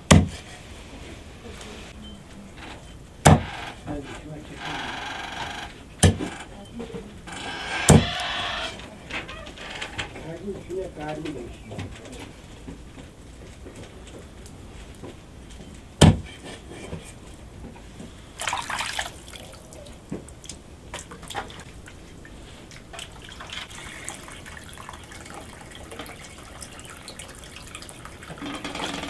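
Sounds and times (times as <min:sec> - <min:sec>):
sharp knock: 0:00.1 - 0:00.4, 0:03.2 - 0:03.6, 0:16.0 - 0:16.4
water splashing and dripping: 0:18.2 - 0:29.0.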